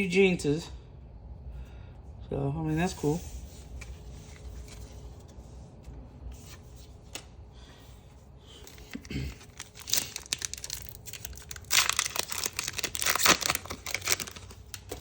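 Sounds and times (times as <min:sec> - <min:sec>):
foil wrapper crinkling and tearing: 0:08.6 - 0:15.0.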